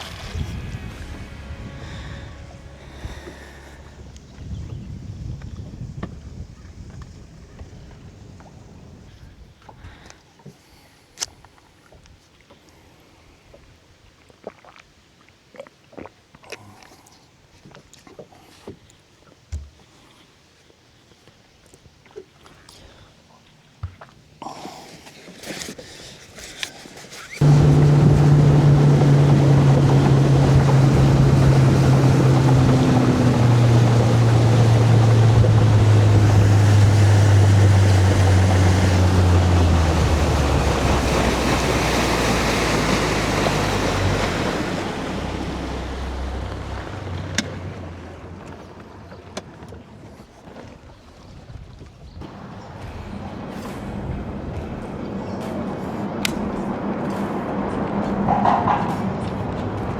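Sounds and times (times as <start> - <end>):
water rushing: 0.0 - 5.6, 27.4 - 50.0, 52.2 - 59.9
wind rushing: 0.0 - 6.0, 27.4 - 46.4
outboard motor running: 0.0 - 8.4, 27.4 - 51.2.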